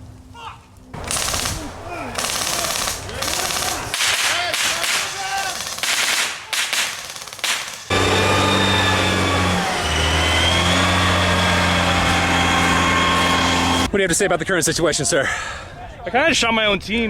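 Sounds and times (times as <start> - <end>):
people shouting: 1.0 - 5.9
airsoft guns firing in bursts: 1.0 - 8.0.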